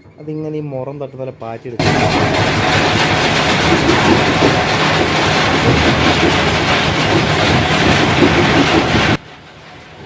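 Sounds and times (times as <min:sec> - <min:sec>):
stone crusher breaking rock: 0:01.8 - 0:09.2.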